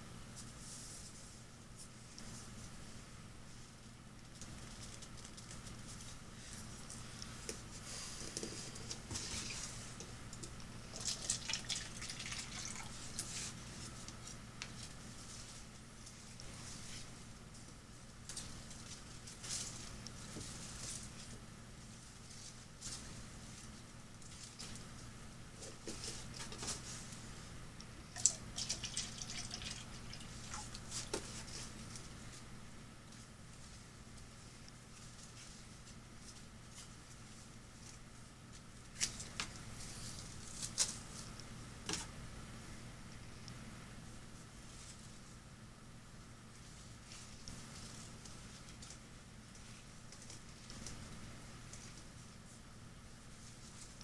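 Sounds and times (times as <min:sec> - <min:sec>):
steady low hum: 0:00.0 - 0:54.0
water dripping and spattering: 0:11.0 - 0:12.9, 0:28.2 - 0:30.6.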